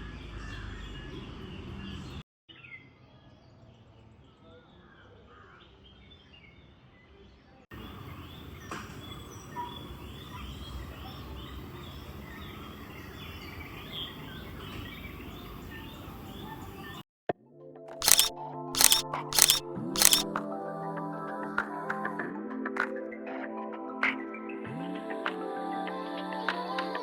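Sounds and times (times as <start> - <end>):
birds chirping and calling: 7.8 - 17.0
outdoor ambience hiss: 7.8 - 17.0.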